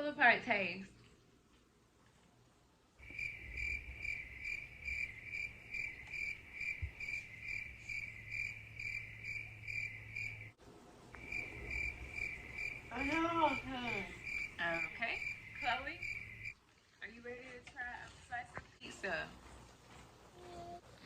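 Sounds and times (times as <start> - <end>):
cricket chirping: 3.0 - 16.6.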